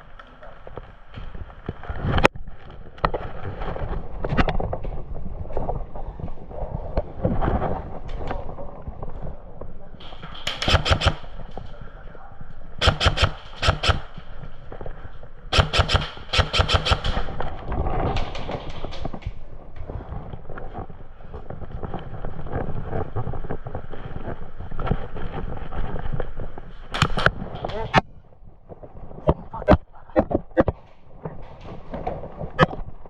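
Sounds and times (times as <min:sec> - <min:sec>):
movement and outdoor noise: 0:00.0 - 0:33.0
airsoft guns firing bursts: 0:10.0 - 0:11.6, 0:12.8 - 0:14.4, 0:15.5 - 0:17.5, 0:26.9 - 0:27.3.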